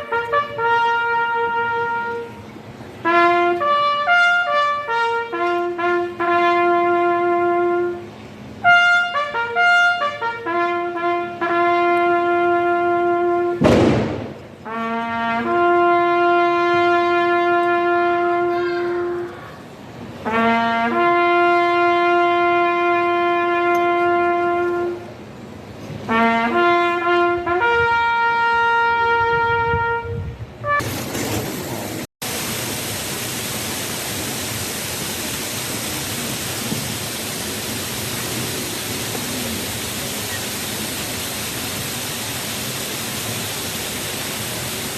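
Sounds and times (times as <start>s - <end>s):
brass instrument slow tune: 0.0s - 19.5s, 20.1s - 30.9s
steady loud hiss: 0.0s - 44.9s
short sharp bang: 13.6s - 14.6s.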